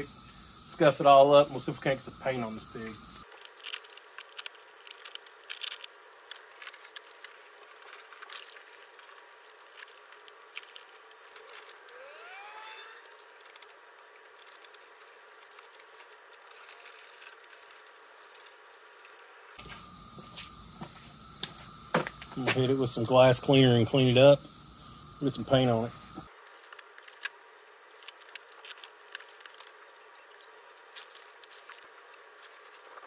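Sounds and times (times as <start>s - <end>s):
rising whine: 11.7s - 13.6s, 19.6s - 26.3s.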